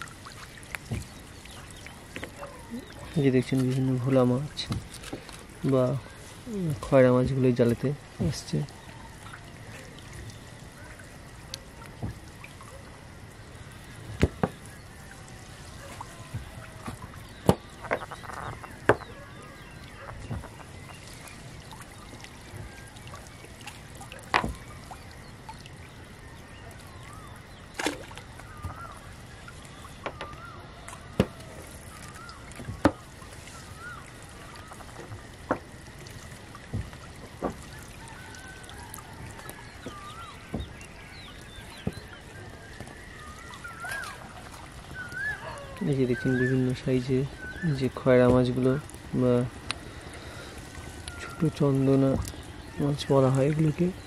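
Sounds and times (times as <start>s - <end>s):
faint wavering calls: 0.0s - 54.0s
fishing net knocks and clatters: 24.2s - 24.7s, 36.6s - 37.8s.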